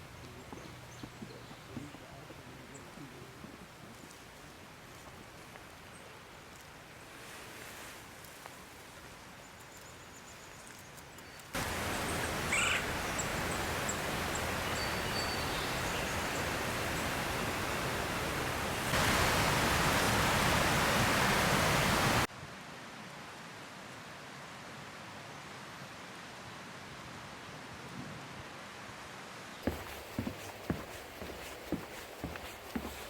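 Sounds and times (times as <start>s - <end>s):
river rushing: 11.6s - 22.3s, 29.6s - 33.0s.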